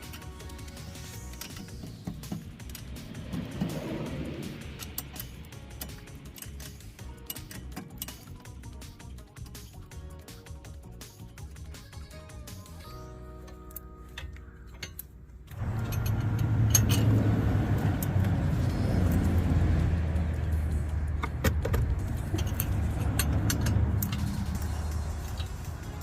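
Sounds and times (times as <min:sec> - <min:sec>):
car engine rumbling: 0:00.0 - 0:08.8, 0:14.4 - 0:26.0
light metallic clicks and jingles: 0:00.0 - 0:10.6, 0:13.4 - 0:19.4, 0:20.3 - 0:26.0.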